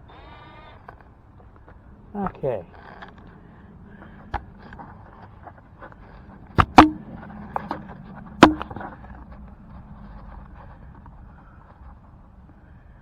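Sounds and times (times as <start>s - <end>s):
sharp metallic tool knocks: 6.6s - 7.1s, 8.4s - 8.8s.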